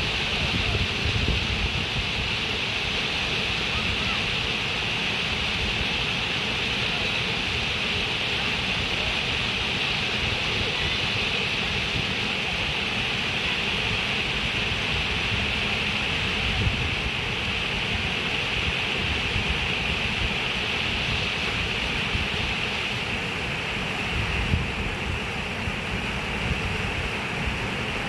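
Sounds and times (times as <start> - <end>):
water rushing: 0.0 - 28.0.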